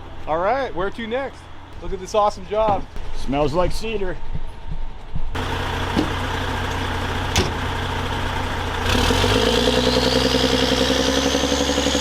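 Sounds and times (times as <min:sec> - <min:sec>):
vehicle engine idling and revving: 0:05.3 - 0:12.0
rising whine: 0:05.4 - 0:12.0.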